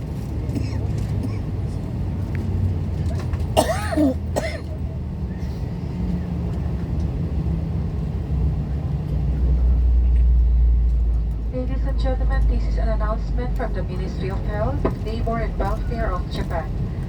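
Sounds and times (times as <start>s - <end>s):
jet engine cabin rumble: 0.0s - 17.0s
person clearing throat: 3.6s - 4.7s.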